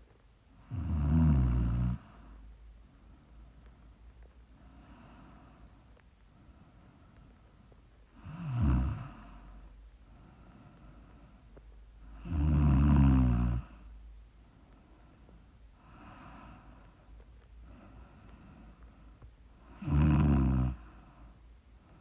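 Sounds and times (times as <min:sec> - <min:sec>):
woman snoring: 0:00.7 - 0:02.1, 0:08.2 - 0:09.4, 0:12.2 - 0:13.7, 0:19.7 - 0:21.0
faint breath: 0:02.2 - 0:07.8, 0:09.1 - 0:12.2, 0:13.6 - 0:19.8, 0:20.7 - 0:22.0.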